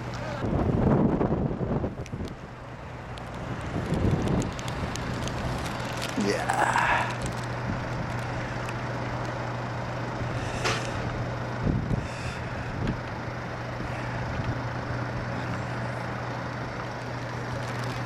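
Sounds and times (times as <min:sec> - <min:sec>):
outdoor noise: 0:00.0 - 0:18.0
motor droning: 0:06.8 - 0:18.0.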